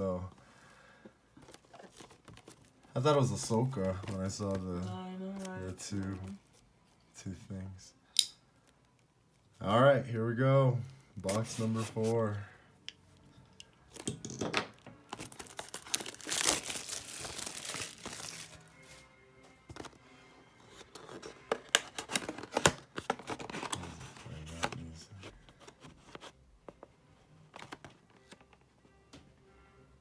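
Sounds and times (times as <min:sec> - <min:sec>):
packaging ripping: 0:15.1 - 0:18.6
packaging crinkling: 0:15.1 - 0:18.7.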